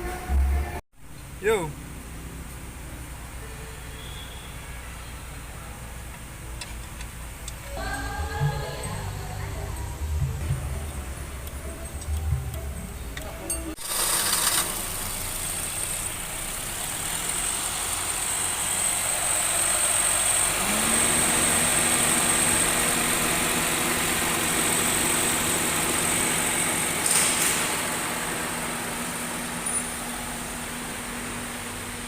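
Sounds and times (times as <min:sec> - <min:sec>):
engine starting and idling: 0:07.6 - 0:32.0.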